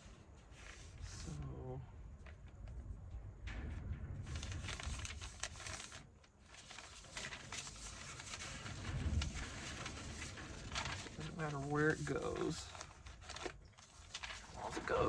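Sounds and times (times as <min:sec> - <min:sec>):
paper rustling and crinkling: 0:00.0 - 0:01.6, 0:04.2 - 0:15.0
dull low rumble: 0:01.0 - 0:06.0, 0:08.2 - 0:12.0.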